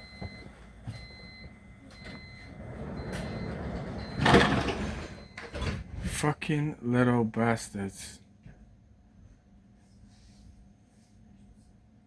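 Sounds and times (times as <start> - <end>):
door warning beeps: 0.0 - 6.2
train doors sliding shut: 2.0 - 6.2.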